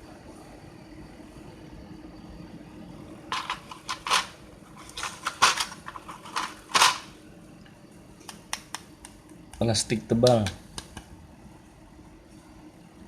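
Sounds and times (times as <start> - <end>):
plastic parts clicking: 3.4 - 7.1.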